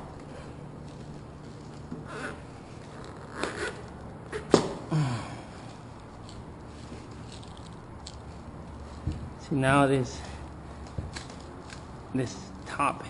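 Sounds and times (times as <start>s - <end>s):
knife scraping and squeaking through adhesive: 2.0s - 4.6s.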